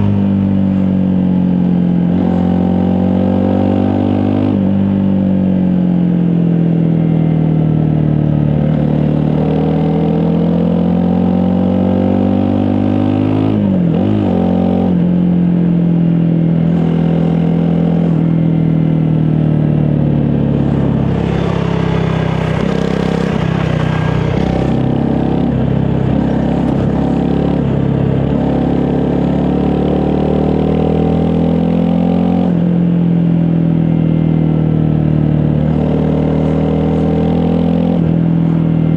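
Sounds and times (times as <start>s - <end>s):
motorcycle engine running: 13.7s - 37.4s.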